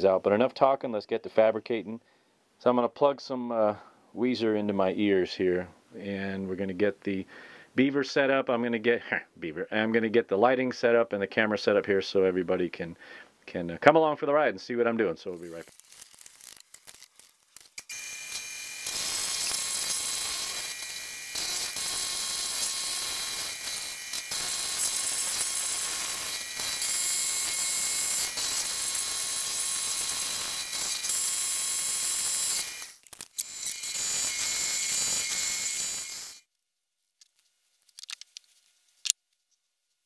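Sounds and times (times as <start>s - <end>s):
milling cutter metallic whine: 17.8s - 36.4s.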